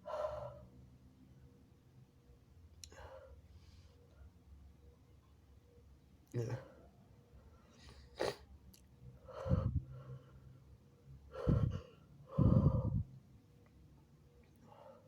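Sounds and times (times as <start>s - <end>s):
man gasping breaths: 9.3s - 9.9s, 11.3s - 13.1s.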